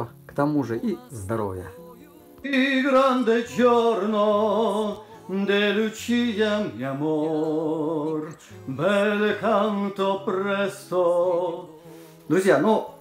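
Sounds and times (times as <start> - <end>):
man singing long notes: 0.6 - 11.9.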